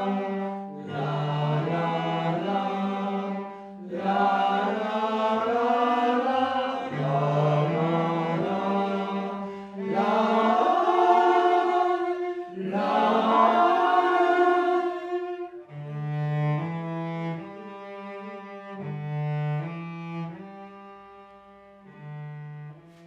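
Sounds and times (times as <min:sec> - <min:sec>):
chant-like held notes: 0:00.8 - 0:15.7.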